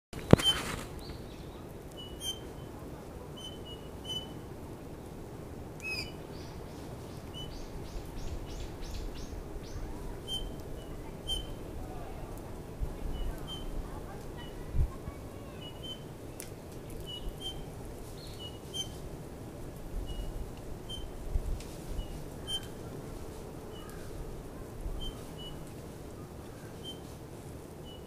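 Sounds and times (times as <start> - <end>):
bird piping whistles: 2.0 - 2.6, 3.4 - 4.4, 5.8 - 6.4, 7.3 - 11.6, 13.1 - 13.8, 17.1 - 19.0.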